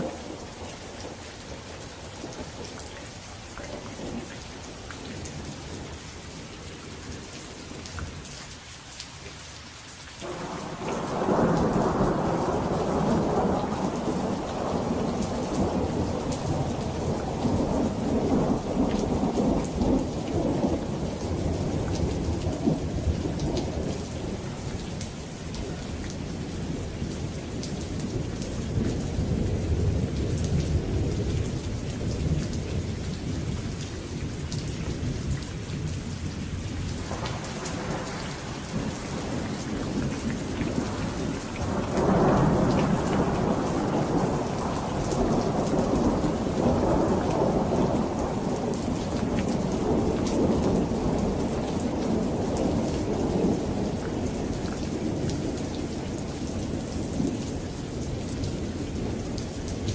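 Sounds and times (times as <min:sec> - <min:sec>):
steady rain falling: 0:00.0 - 0:59.9
rolling thunder: 0:10.2 - 0:54.5.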